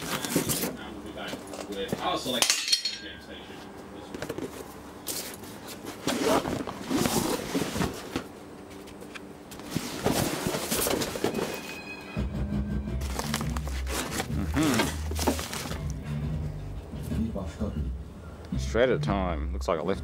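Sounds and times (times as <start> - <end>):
items knocking and clattering: 9.8 - 11.6, 13.0 - 15.8
podcast voices: 17.1 - 20.0.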